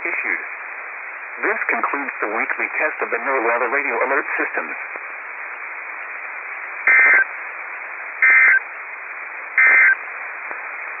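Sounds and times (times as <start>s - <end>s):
radio hiss: 0.0s - 11.0s
data tone bursts: 6.9s - 7.3s, 8.2s - 8.6s, 9.6s - 10.0s.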